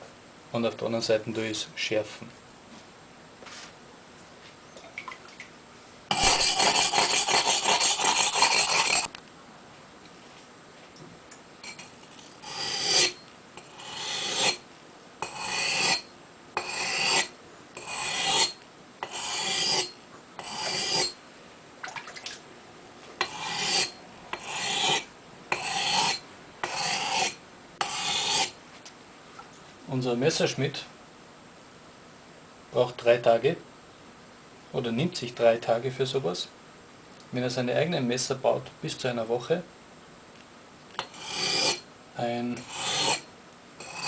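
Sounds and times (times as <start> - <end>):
axe scraping on whetstone: 6.1 - 9.1, 11.6 - 14.6, 15.2 - 21.2, 23.2 - 28.6, 41.0 - 41.8, 42.6 - 44.0.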